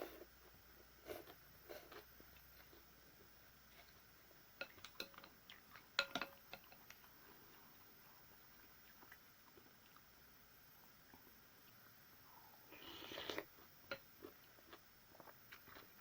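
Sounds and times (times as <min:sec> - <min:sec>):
utensils clinking against bowl: 0:06.0 - 0:06.8.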